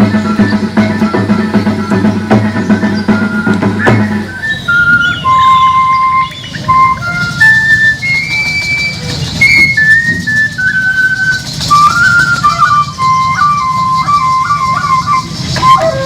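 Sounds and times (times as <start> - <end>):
drum: 0.0 - 5.0
high flute melody: 0.0 - 16.0
rattle: 7.0 - 16.0.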